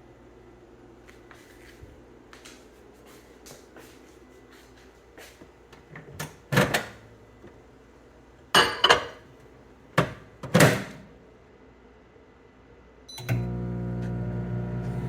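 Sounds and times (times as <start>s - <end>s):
kitchen knocks and clunks: 8.6s - 9.2s, 10.0s - 11.0s.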